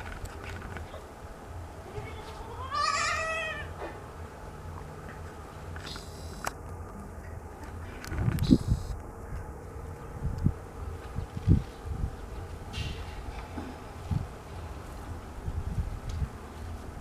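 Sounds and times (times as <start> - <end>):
goat bleating: 1.8 - 3.8.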